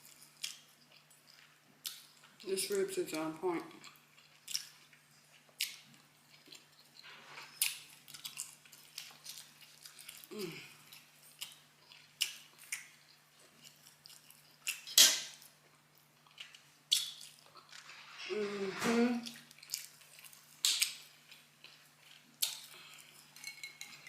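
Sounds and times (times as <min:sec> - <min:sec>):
person chewing ribs: 0:00.0 - 0:02.5, 0:03.6 - 0:17.9, 0:19.2 - 0:24.0.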